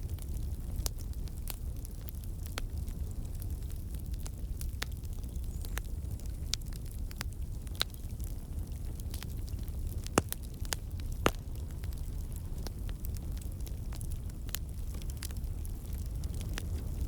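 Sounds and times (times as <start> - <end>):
fire burning in fireplace: 0.0 - 17.0
fire crackles and pops: 0.0 - 17.0.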